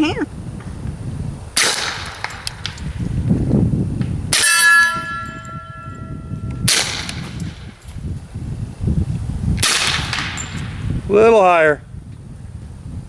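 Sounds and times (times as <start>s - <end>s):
suppressed pistol shots: 1.6s - 2.9s, 6.7s - 7.4s
steel target ringing: 4.3s - 7.6s.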